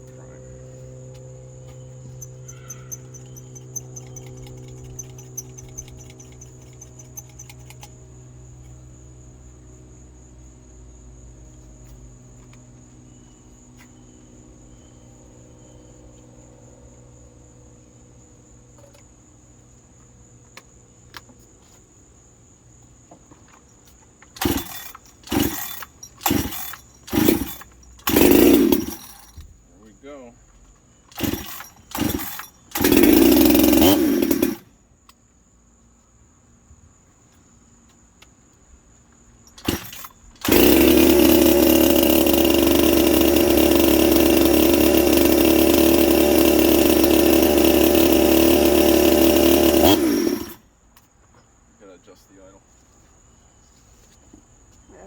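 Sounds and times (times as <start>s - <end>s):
crickets chirping: 0.0s - 55.0s
chainsaw engine sputtering: 2.0s - 8.7s, 24.4s - 29.4s, 31.1s - 34.7s, 39.5s - 50.6s.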